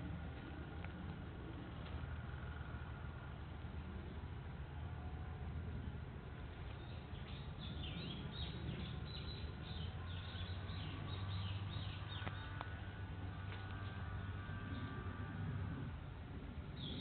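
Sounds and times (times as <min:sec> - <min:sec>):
low rumble: 0:00.0 - 0:17.0.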